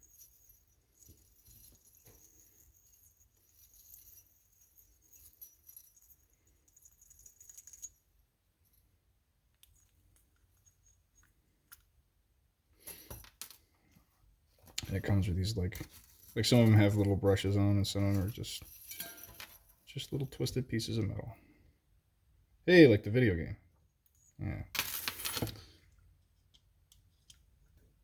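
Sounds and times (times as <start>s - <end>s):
wire picks scratching metal: 14.7s - 21.0s.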